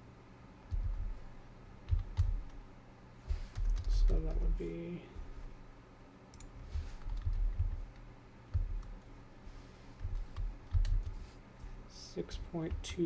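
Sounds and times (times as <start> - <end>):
typing on computer keyboard: 0.7 - 1.2, 1.9 - 2.6, 3.3 - 4.5, 6.3 - 9.1, 10.0 - 11.2.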